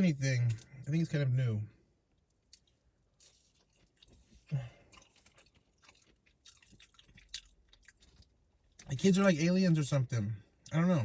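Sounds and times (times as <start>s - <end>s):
chewing food: 2.1s - 9.0s.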